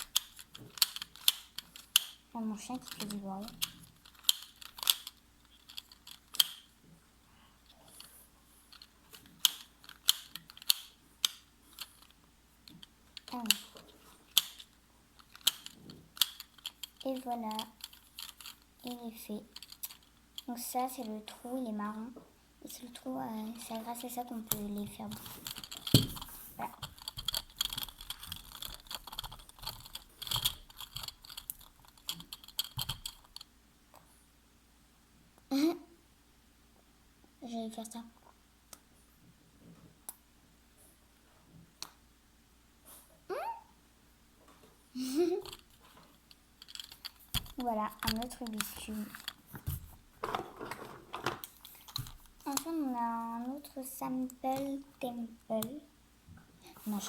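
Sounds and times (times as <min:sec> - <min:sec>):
plastic balls clicking in a toy: 0:00.0 - 0:06.7, 0:08.7 - 0:21.2, 0:23.6 - 0:33.5, 0:46.6 - 0:49.4, 0:51.2 - 0:52.8.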